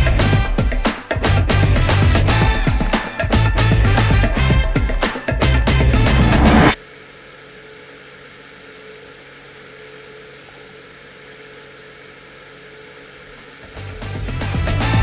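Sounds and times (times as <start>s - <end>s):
music: 0.0s - 6.8s, 13.6s - 15.0s.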